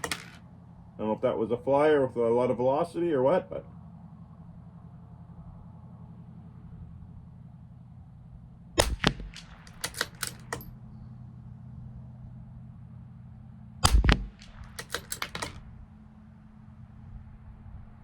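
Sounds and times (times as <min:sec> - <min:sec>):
rifle bolt clicking: 0:00.0 - 0:00.4, 0:08.8 - 0:10.7, 0:13.9 - 0:15.6
rifle shots: 0:00.0 - 0:00.4, 0:08.8 - 0:10.7, 0:13.8 - 0:15.7.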